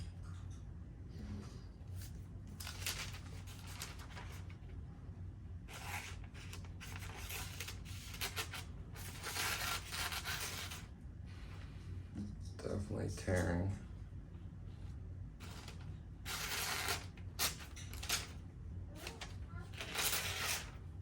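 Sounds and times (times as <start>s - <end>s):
low steady hum: 0.0s - 21.0s
knife tearing through paper: 5.7s - 10.9s, 15.4s - 18.4s, 19.0s - 20.8s.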